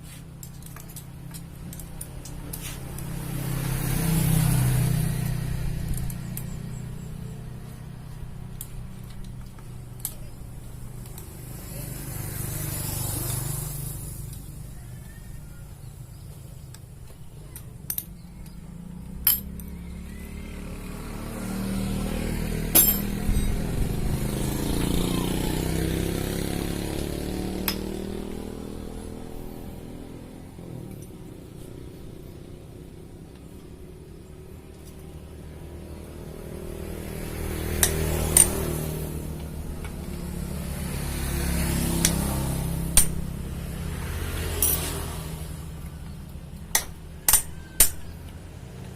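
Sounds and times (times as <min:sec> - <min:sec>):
sharp metallic clinks: 0:17.4 - 0:20.3, 0:22.7 - 0:24.4, 0:37.8 - 0:38.9, 0:44.4 - 0:45.5
motorcycle engine running: 0:18.1 - 0:46.5.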